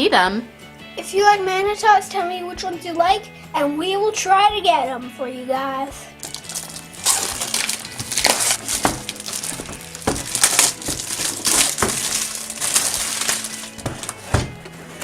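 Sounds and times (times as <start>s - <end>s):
toy packaging crinkling: 6.2s - 14.1s.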